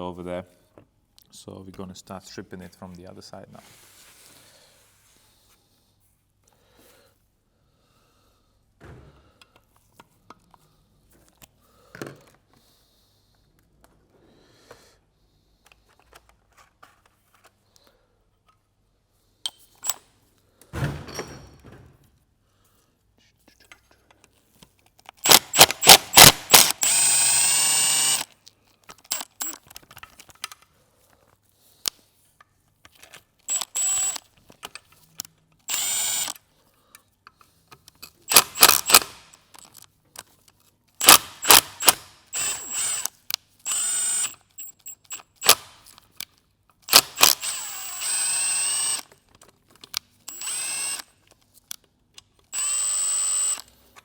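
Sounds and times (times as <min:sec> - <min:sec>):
impact ratchet hammering and whining: 0:25.2 - 0:28.3, 0:33.5 - 0:34.2, 0:35.7 - 0:36.4, 0:38.3 - 0:39.4, 0:41.0 - 0:45.9, 0:46.9 - 0:49.1, 0:50.3 - 0:51.1.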